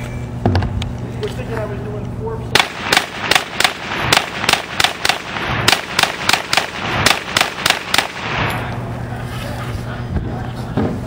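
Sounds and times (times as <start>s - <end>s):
carbine gunshots: 2.6s - 8.8s.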